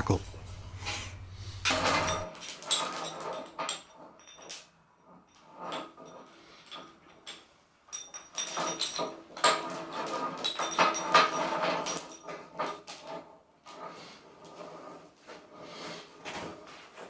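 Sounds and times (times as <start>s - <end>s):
chain rattling through block: 0.0s - 4.6s.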